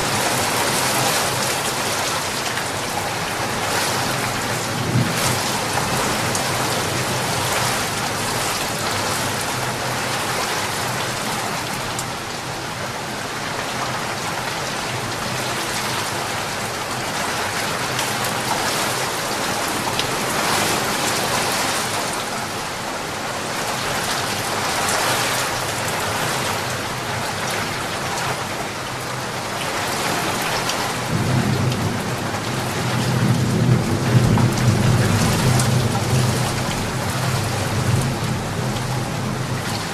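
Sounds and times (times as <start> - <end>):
rain pouring: 0.0 - 39.9
thunder rumbling: 30.9 - 39.8.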